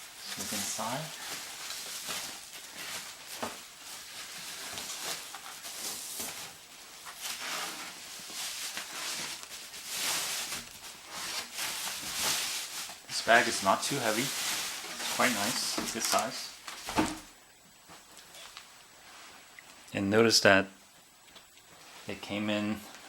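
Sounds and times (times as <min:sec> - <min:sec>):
packaging rustling and crinkling: 0:00.0 - 0:17.3.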